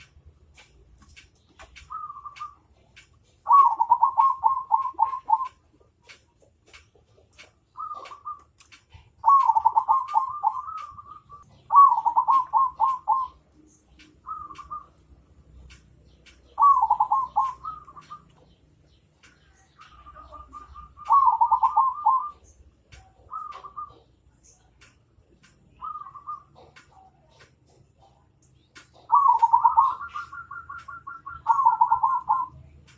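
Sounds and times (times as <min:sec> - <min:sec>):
faint clicks: 0:00.0 - 0:11.5, 0:12.1 - 0:32.9
bird calling rippling notes: 0:03.4 - 0:05.6, 0:09.2 - 0:13.4, 0:16.4 - 0:18.4, 0:19.8 - 0:22.5, 0:29.1 - 0:32.7.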